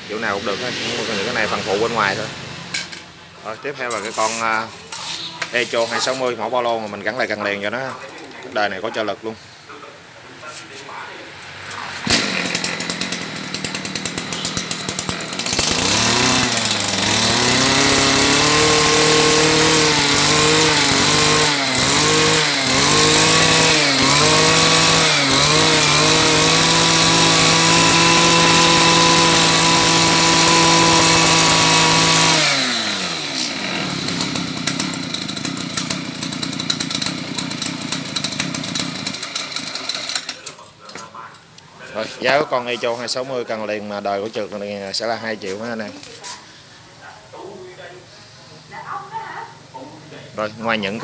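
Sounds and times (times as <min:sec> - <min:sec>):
brush cutter engine revving: 0:00.0 - 0:07.7, 0:11.5 - 0:40.6, 0:50.4 - 0:51.0.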